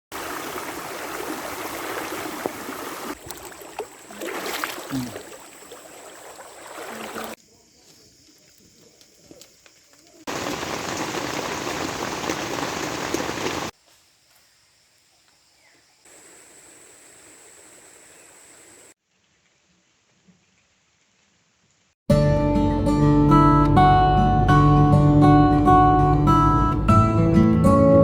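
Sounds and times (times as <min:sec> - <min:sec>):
steady rain hiss: 0:10.2 - 0:13.8, 0:16.1 - 0:22.0.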